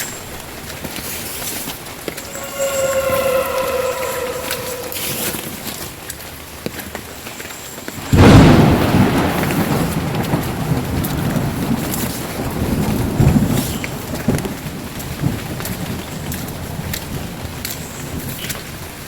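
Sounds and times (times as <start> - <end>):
steady rain: 7.9 - 19.0.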